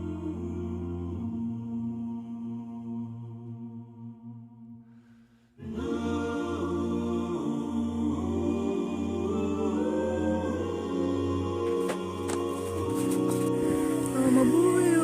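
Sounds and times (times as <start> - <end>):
layered vocal music: 0.0 - 15.0
background music: 5.6 - 15.0.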